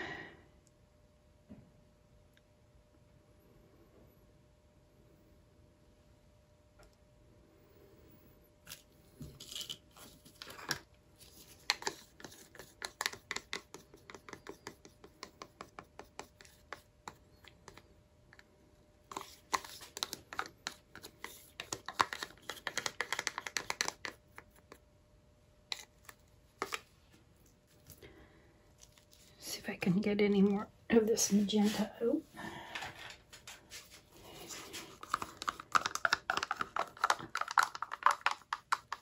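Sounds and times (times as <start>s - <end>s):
plastic cups clicking and scratching: 8.7s - 24.8s, 25.7s - 28.1s, 32.7s - 39.0s.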